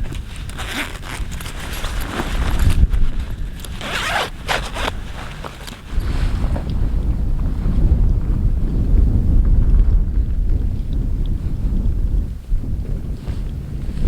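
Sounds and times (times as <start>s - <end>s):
zipper pulled: 0.0s - 6.6s
low wind rumble on microphone: 0.0s - 14.0s.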